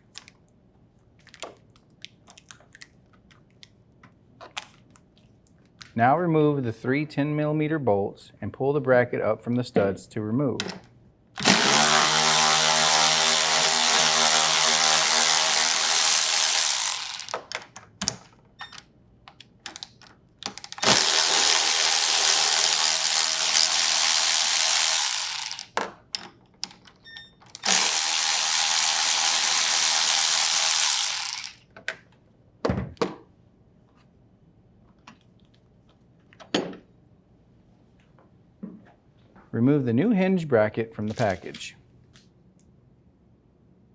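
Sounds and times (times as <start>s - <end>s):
power socket tool running: 11.4s - 17.5s, 20.5s - 25.8s, 27.5s - 31.6s.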